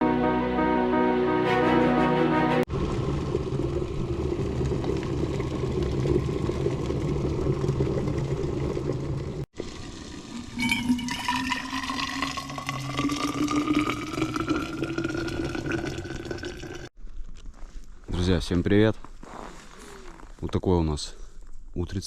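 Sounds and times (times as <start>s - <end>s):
liquid poured into container: 3.0s - 16.9s
water running: 5.5s - 16.9s.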